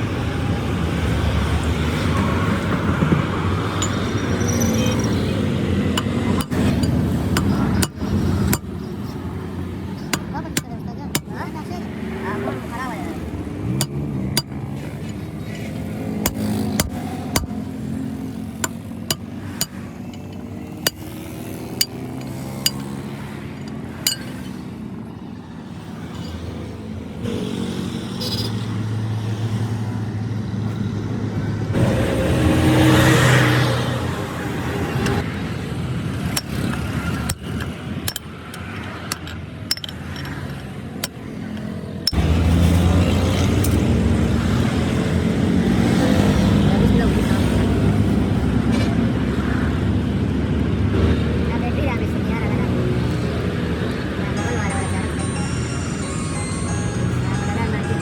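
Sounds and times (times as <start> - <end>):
metal knocks and clinks: 3.7 - 5.1, 6.0 - 9.2, 13.8 - 17.7, 18.6 - 21.2, 21.8 - 24.7, 36.3 - 42.2.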